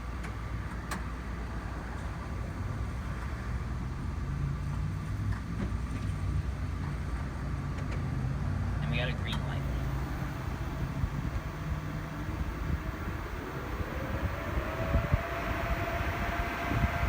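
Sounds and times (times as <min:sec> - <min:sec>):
charger humming: 0:08.9 - 0:17.0.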